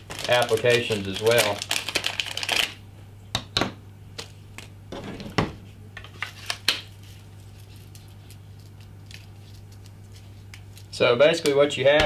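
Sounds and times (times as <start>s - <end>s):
plastic packaging rustle: 0.0s - 2.8s, 6.1s - 11.0s
steady low hum: 0.0s - 12.0s.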